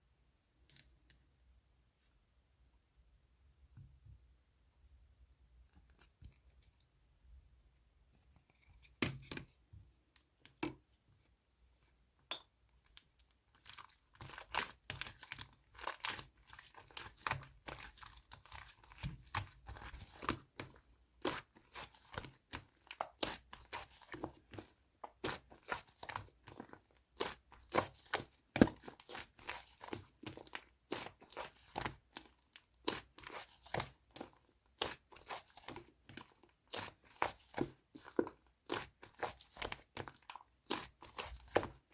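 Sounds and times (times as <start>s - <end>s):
slime crackling and squelching: 12.8s - 41.9s.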